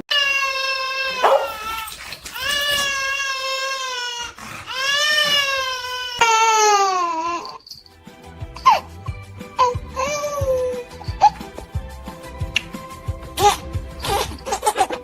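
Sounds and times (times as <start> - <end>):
dog howling: 1.0 - 3.1.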